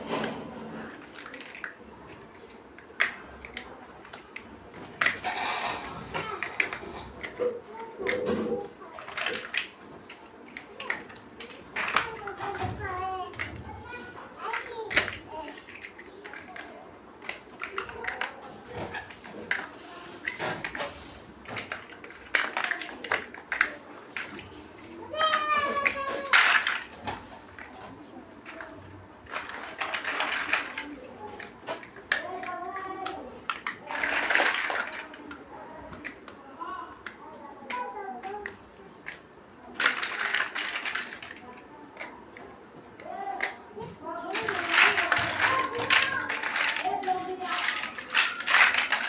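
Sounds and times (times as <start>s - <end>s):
rattle of plastic pieces: 0.0s - 36.4s, 37.0s - 49.0s
plastic bricks clicking together: 0.1s - 36.4s, 37.0s - 42.4s, 44.3s - 49.0s.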